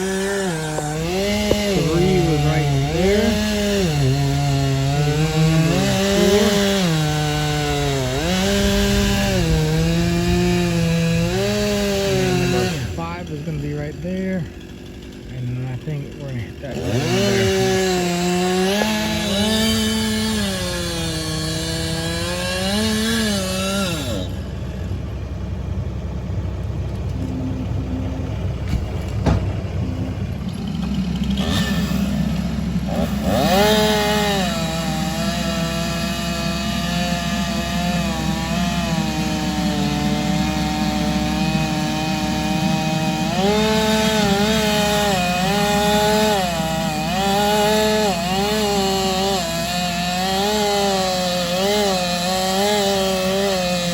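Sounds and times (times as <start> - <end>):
chainsaw cutting wood: 0.0 - 25.4, 26.8 - 53.9.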